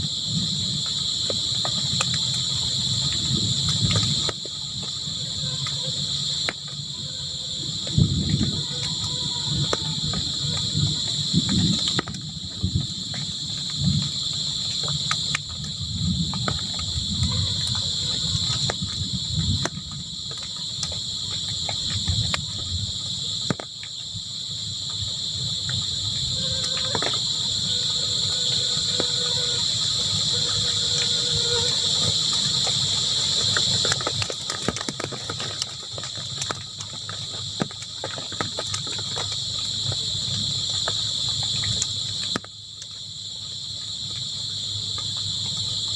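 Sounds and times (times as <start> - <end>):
crickets chirring: 0.0 - 45.9.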